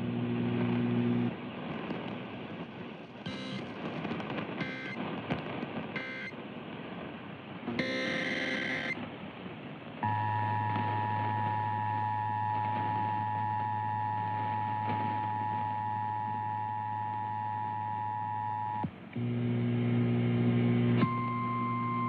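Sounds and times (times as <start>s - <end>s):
steady dual tone: 3.3s - 3.7s, 4.6s - 5.0s, 6.0s - 6.4s, 7.7s - 9.0s, 10.0s - 22.0s
low buzzing tone: 10.0s - 22.0s.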